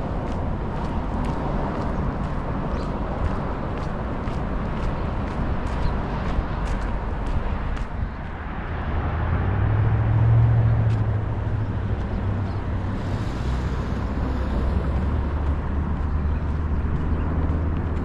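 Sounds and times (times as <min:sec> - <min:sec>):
road noise: 0:00.0 - 0:18.0
vehicle engine hum: 0:00.0 - 0:18.0.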